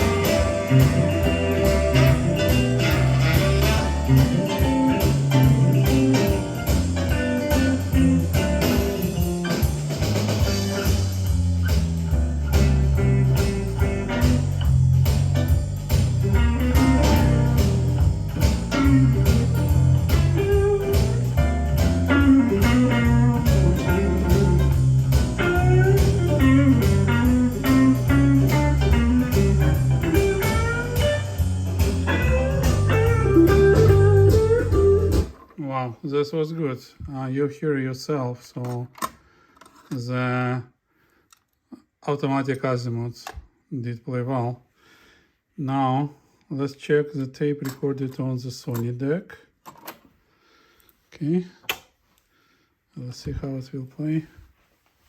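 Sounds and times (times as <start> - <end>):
blues music with guitar: 0.0 - 35.4.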